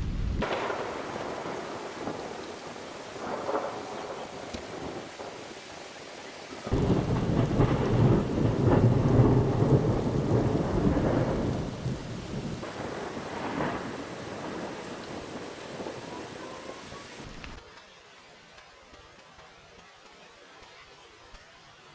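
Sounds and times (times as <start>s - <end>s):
thunder rumbling: 0.0s - 17.3s
steady rain: 0.0s - 21.9s.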